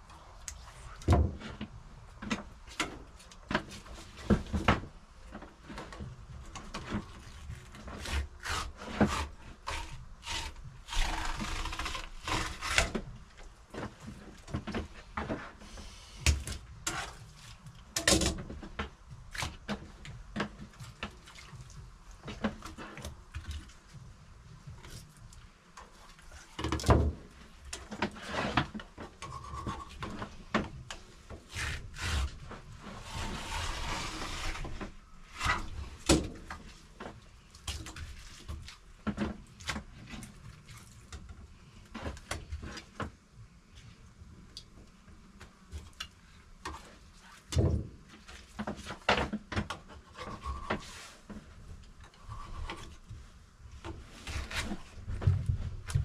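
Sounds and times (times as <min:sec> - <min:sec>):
scraping and rubbing: 0:31.5 - 0:36.0.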